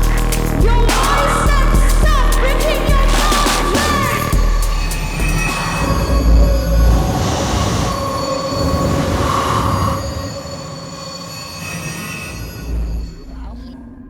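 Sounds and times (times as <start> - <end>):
deep bass swells: 0.0 - 10.4
high screeching electronic tones: 0.0 - 13.8.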